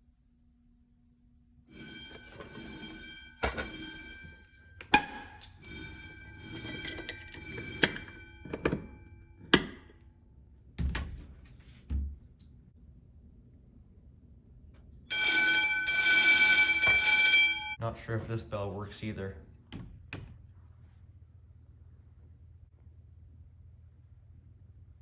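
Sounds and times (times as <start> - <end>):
fire alarm bell ringing: 1.7 - 10.1, 15.1 - 17.9.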